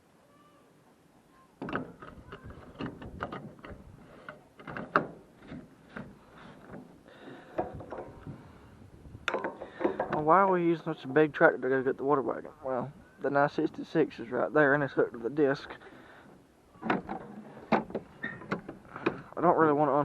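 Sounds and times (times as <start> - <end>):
handling clicks knocks and rattles: 1.6 - 8.3, 9.2 - 10.3, 16.8 - 19.3.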